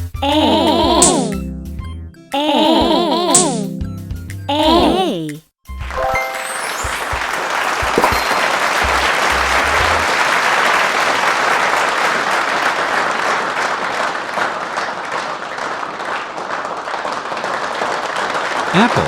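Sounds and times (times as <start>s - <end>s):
crowd applause: 6.2s - 19.0s.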